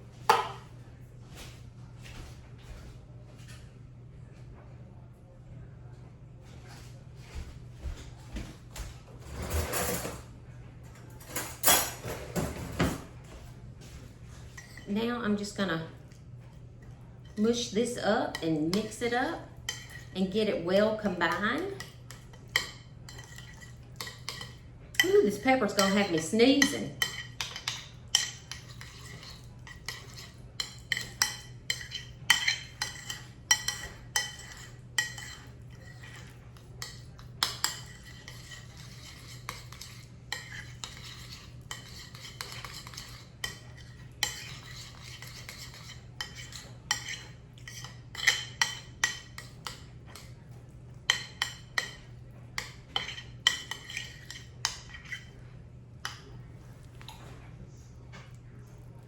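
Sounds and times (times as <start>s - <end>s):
utensil scraping and clinking bowl: 9.3s - 10.2s, 14.3s - 57.3s.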